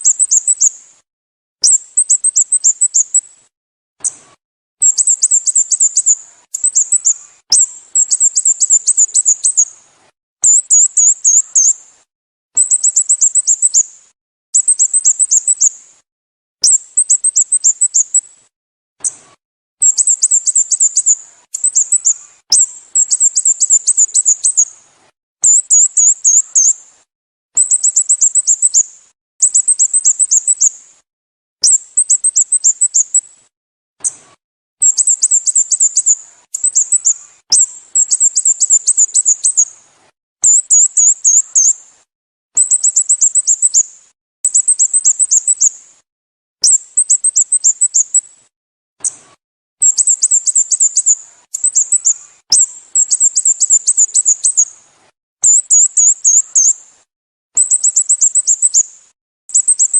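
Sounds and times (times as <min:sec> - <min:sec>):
bird calling rapidly: 0:04.8 - 0:09.7, 0:19.8 - 0:24.7, 0:34.8 - 0:39.6, 0:49.9 - 0:54.6.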